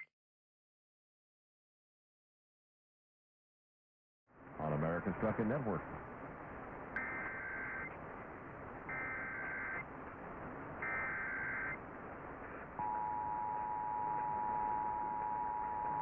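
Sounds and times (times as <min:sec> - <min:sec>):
radio background hiss: 0:04.5 - 0:12.8
buzzing digital data tones: 0:07.0 - 0:07.9, 0:08.9 - 0:09.8, 0:10.8 - 0:11.8
two-tone attention signal: 0:10.8 - 0:11.8, 0:12.8 - 0:16.0.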